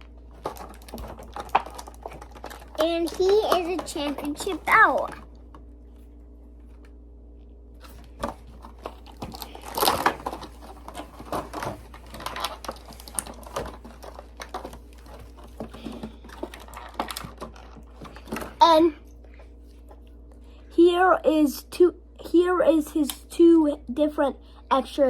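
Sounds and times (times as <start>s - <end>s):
packaging rustling: 0.0s - 5.5s, 7.8s - 18.6s
plastic parts clicking and tapping: 0.3s - 5.2s, 8.2s - 18.6s.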